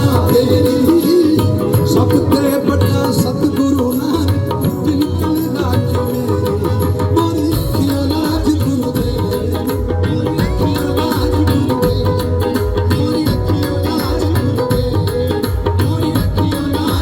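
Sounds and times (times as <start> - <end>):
live folk band music: 0.0 - 17.0.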